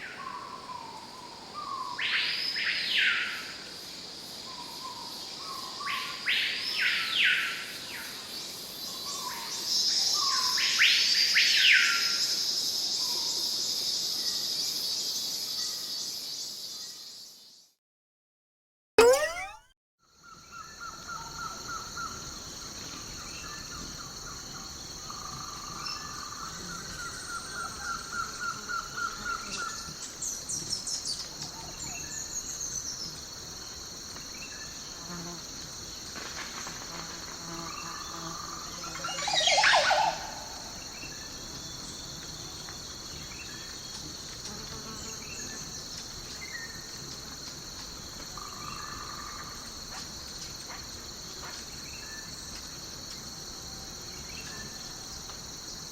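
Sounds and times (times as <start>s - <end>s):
high insect drone: 20.5s - 55.9s.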